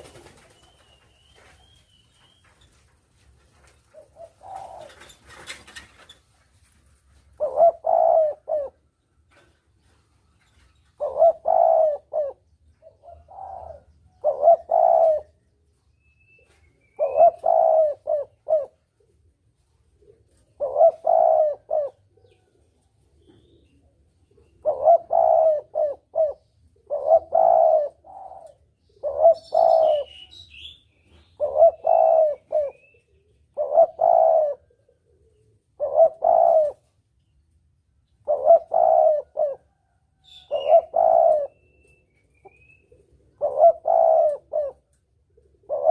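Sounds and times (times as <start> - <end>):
dove cooing: 3.8 - 6.2, 7.3 - 9.6, 10.8 - 15.5, 16.4 - 37.0, 38.1 - 45.9.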